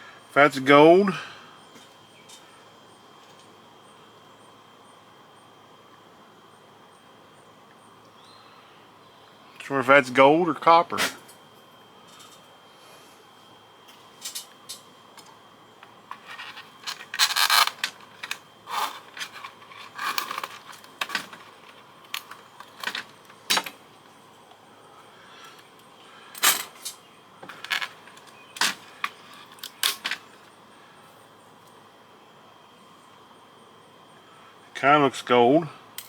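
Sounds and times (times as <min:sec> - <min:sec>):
small parts clicking and rattling: 0:12.1 - 0:12.4, 0:14.2 - 0:23.8, 0:25.4 - 0:30.5.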